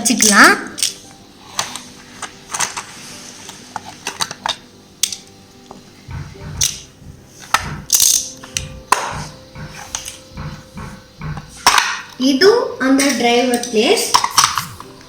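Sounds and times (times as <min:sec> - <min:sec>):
dull handling thumps: 0:06.1 - 0:07.9, 0:08.6 - 0:11.6
plastic toy cars clicking: 0:13.5 - 0:14.7.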